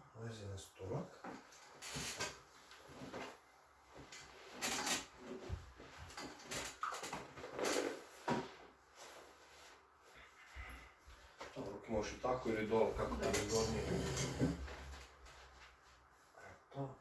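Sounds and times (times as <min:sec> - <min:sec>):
clothing rustling: 0:01.2 - 0:11.8.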